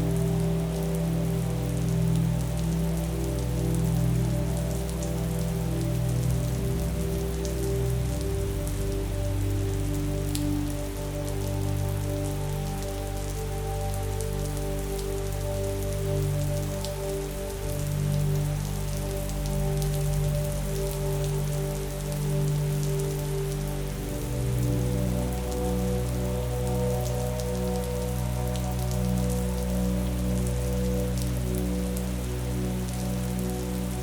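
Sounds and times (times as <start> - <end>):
rain pattering: 0.0 - 34.0
soft music of held chords: 0.0 - 34.0.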